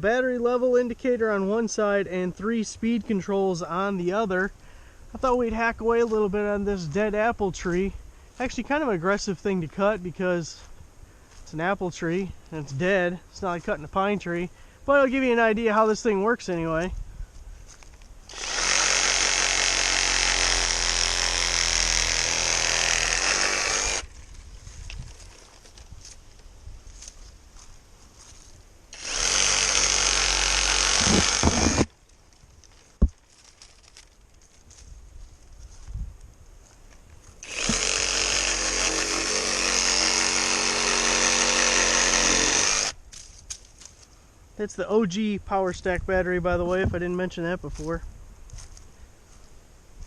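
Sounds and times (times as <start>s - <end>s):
reciprocating saw cutting wood: 18.3s - 24.2s, 28.9s - 31.9s, 37.4s - 43.0s.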